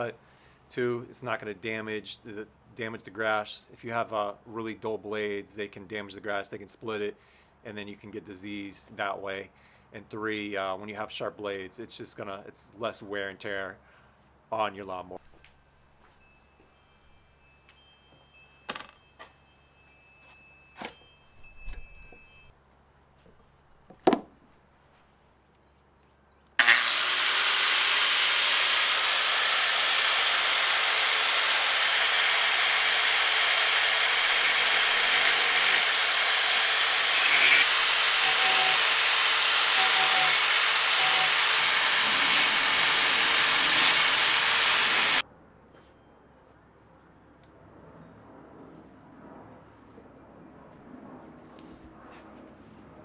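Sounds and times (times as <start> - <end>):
angle grinder grinding metal: 26.6 - 45.2.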